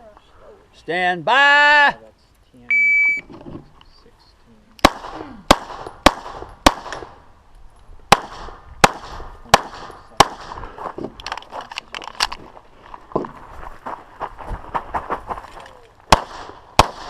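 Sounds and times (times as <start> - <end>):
handgun shots: 4.8 - 7.1, 16.1 - 17.0.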